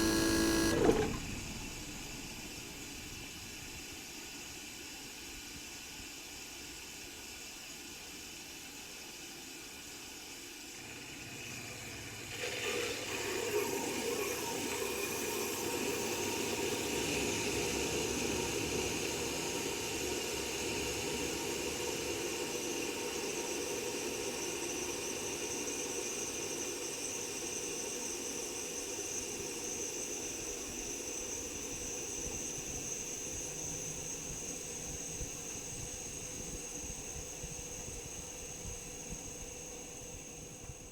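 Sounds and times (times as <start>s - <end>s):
air conditioner compressor humming: 0.0s - 3.4s
compressor hiss and high whine: 0.0s - 4.4s.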